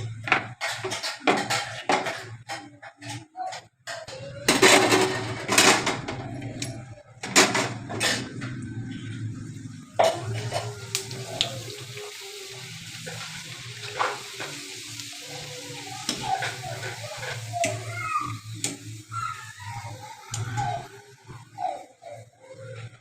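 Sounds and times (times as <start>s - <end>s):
hot oil sizzling: 9.2s - 22.4s.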